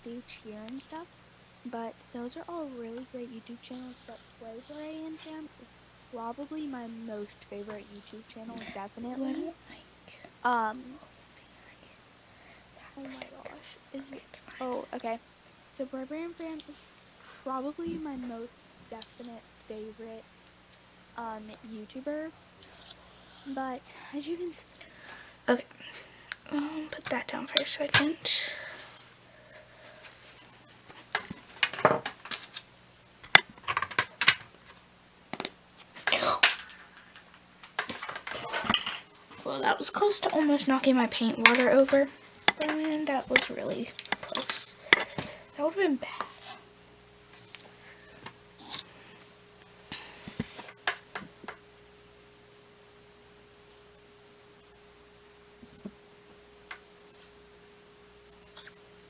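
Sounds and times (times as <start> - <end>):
faint electrical hum: 0.0 - 59.0
painting supplies clicking and tapping: 27.0 - 28.2, 30.9 - 32.6, 33.2 - 39.4, 40.0 - 45.4
small objects knocking on tabletop: 31.2 - 32.4, 33.2 - 34.5.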